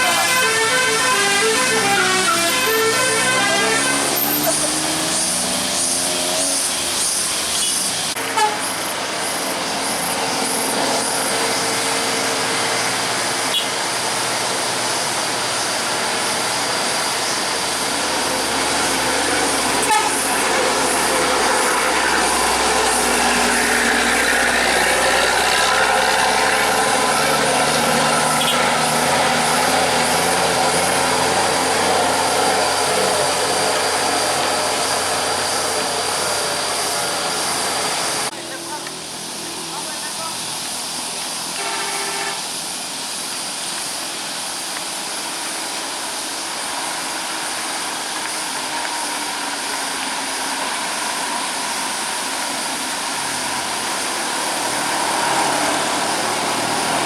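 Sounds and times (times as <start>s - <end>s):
faint horn-like tones: 0.0s - 4.4s
bus engine and road noise: 0.0s - 57.0s.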